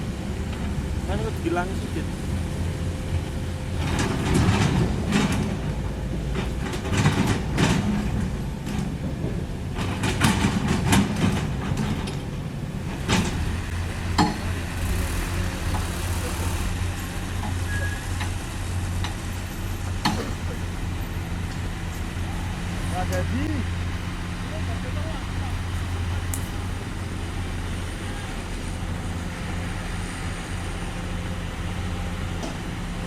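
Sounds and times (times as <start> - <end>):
diesel engine running: 0.0 - 33.0
metallic clanks and knocks: 13.0 - 14.6.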